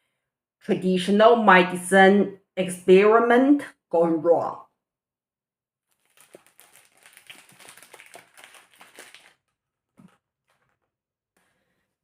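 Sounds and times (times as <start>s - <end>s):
small clicks and crackles: 5.9s - 10.8s.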